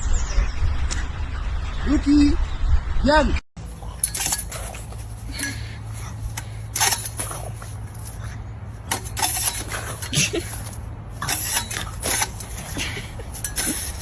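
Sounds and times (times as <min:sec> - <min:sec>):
scraping sounds: 0:03.6 - 0:14.0
steady low hum: 0:03.6 - 0:14.0.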